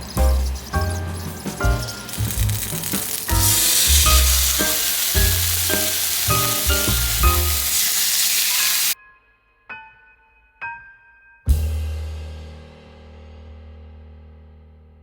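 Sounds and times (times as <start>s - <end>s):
loud sizzling hiss: 0.0s - 9.0s
background music: 0.0s - 11.9s.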